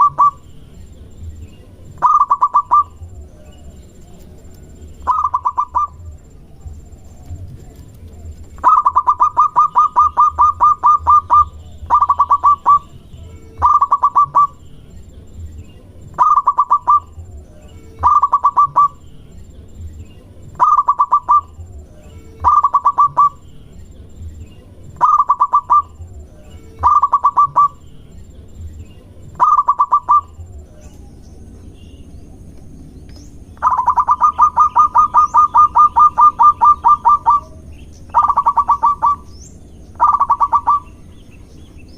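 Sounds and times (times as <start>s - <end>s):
dove cooing staccato: 0.0s - 0.4s, 1.9s - 4.4s, 5.0s - 13.0s, 13.6s - 14.6s, 16.1s - 17.3s, 18.0s - 19.0s, 20.4s - 21.8s, 22.4s - 23.4s, 24.9s - 26.1s, 26.7s - 27.8s, 29.2s - 31.0s, 33.6s - 39.3s, 39.9s - 41.0s.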